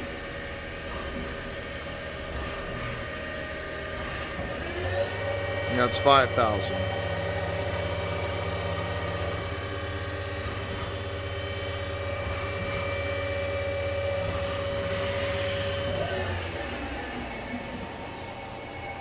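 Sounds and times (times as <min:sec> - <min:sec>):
mill spindle whining: 0:00.0 - 0:19.0.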